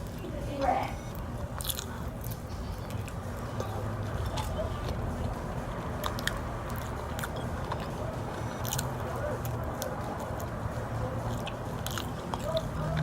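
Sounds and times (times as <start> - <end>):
close chewing: 0.0 - 13.0
steady low rumble: 0.0 - 13.0
wet mouth clicks: 6.0 - 10.6, 11.2 - 13.0.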